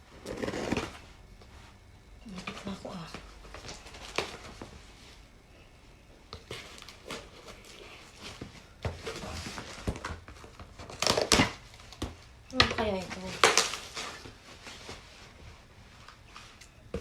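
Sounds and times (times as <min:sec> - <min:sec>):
packaging rustling and crinkling: 0:02.3 - 0:04.9, 0:06.4 - 0:17.0.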